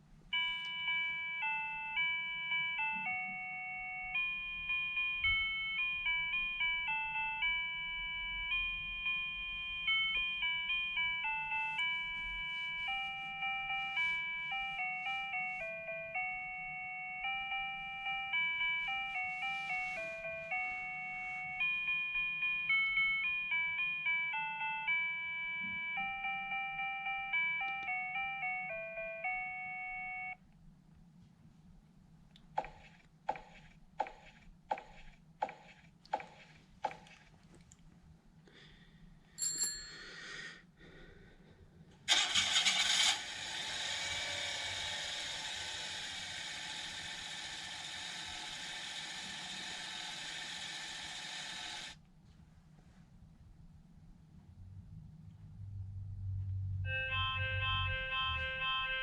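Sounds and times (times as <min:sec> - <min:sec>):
electronic chime melody: 0:00.4 - 0:30.4, 0:56.9 - 0:59.0.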